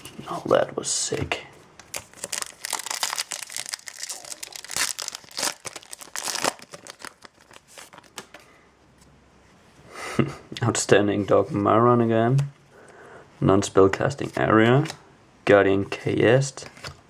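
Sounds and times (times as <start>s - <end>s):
foil wrapper crinkling and tearing: 1.9s - 8.2s.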